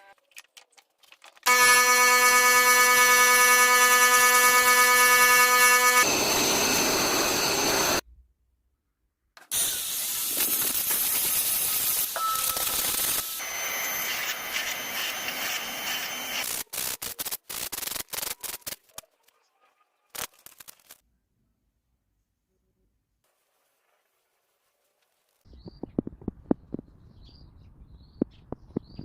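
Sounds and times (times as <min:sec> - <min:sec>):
power tool motor whine: 0:01.5 - 0:08.0, 0:09.5 - 0:16.5.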